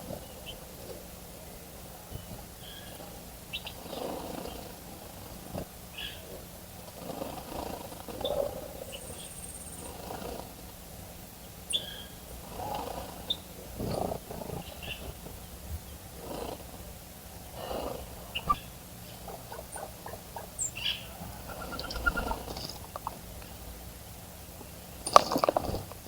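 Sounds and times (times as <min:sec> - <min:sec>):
bird chirps and peeps: 0:02.1 - 0:04.7, 0:07.4 - 0:10.2, 0:11.4 - 0:15.2, 0:18.2 - 0:23.6.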